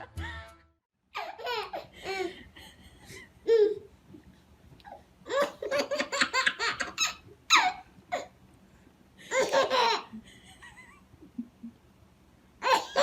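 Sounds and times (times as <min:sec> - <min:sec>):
person laughing: 0:09.3 - 0:11.8.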